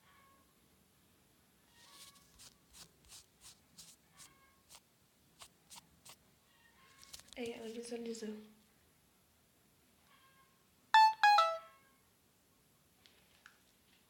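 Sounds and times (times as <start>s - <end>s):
fingers tapping phone screen: 11.0s - 11.6s.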